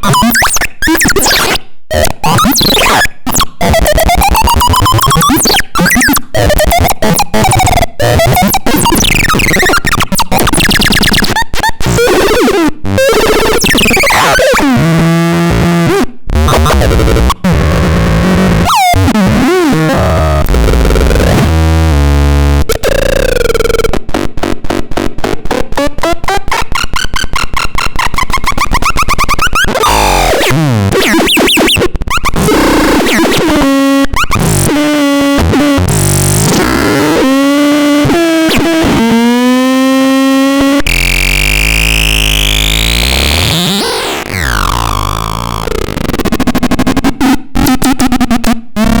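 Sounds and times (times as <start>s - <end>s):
electronic synthesizer effects: 26.6s - 46.8s.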